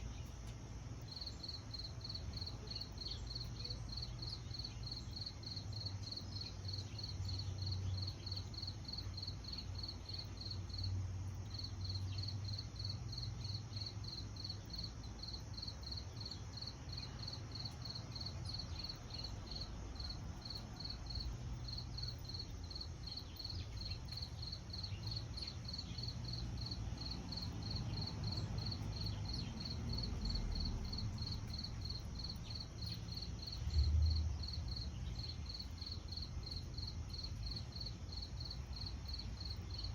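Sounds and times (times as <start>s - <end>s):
cricket chirping: 0.0s - 39.9s
low outdoor rumble: 17.0s - 39.9s.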